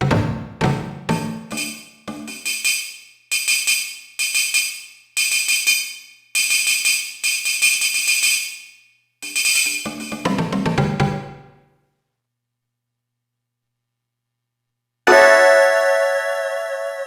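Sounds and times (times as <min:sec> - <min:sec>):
synthesizer tambourine jingling rolls: 0:01.4 - 0:10.6.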